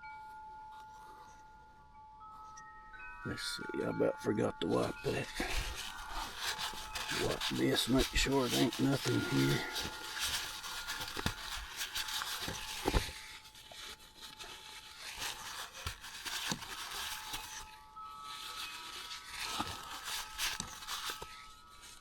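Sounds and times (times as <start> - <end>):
cloth rag rubbing and wiping: 4.7 - 22.0.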